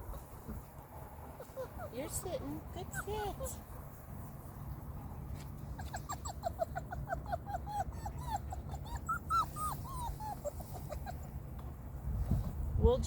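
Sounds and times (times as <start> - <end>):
puppy whining: 1.4 - 2.2, 5.7 - 11.4.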